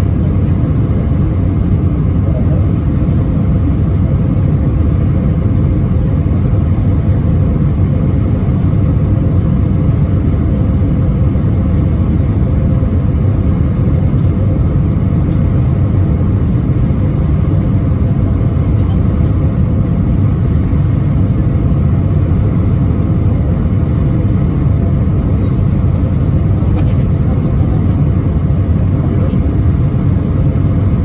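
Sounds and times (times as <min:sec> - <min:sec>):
airplane cabin rumble: 0:00.0 - 0:31.0.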